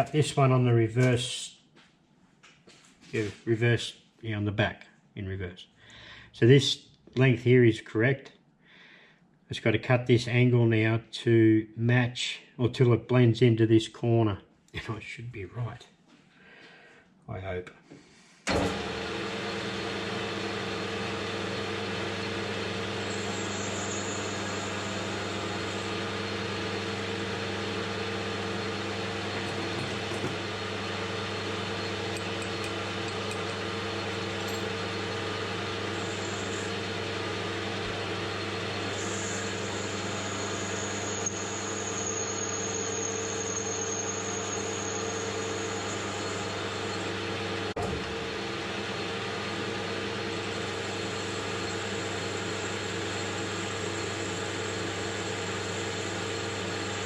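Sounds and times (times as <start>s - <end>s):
metal lathe running: 18.5s - 57.0s
thin high whine: 21.8s - 48.0s.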